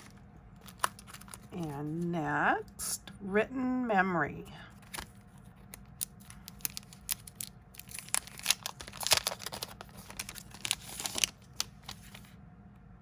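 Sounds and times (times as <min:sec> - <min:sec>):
packaging tearing and crinkling: 0:00.0 - 0:01.5, 0:04.8 - 0:12.3.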